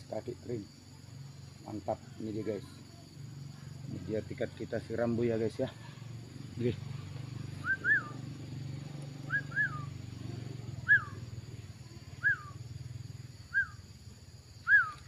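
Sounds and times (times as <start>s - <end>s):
bird whistling: 7.6s - 8.2s, 9.2s - 10.0s, 10.8s - 11.2s, 12.2s - 12.6s, 13.5s - 13.8s, 14.6s - 15.0s.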